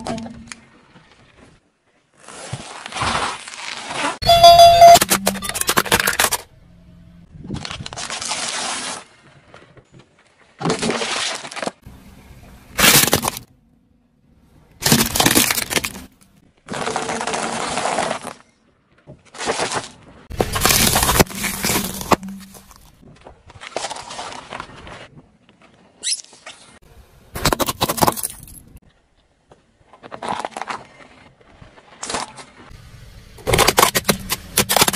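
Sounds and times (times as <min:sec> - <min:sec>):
objects crunching under car tyre: 0:00.0 - 0:06.5, 0:07.3 - 0:12.0, 0:12.7 - 0:13.5, 0:14.8 - 0:26.0, 0:27.4 - 0:32.8, 0:33.4 - 0:34.9.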